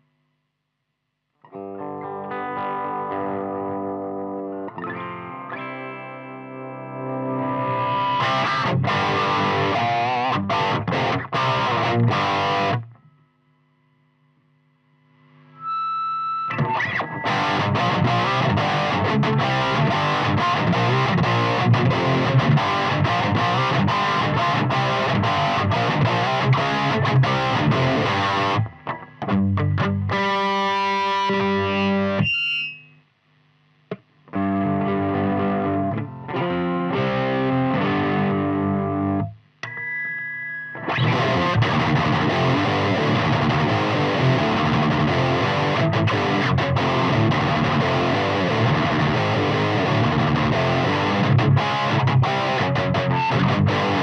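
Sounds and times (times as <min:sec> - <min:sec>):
distorted electric guitar: 0:01.4 - 0:13.3, 0:14.3 - 0:40.0, 0:40.8 - 0:54.0.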